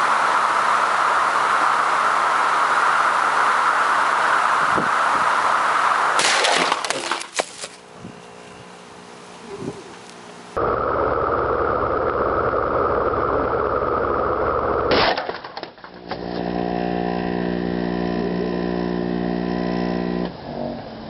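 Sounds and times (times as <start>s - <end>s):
ceiling fans whirring: 0.0s - 14.7s
steady pitched hum: 0.0s - 15.2s, 15.9s - 21.0s
sharp crash: 6.2s - 7.8s, 14.9s - 15.9s.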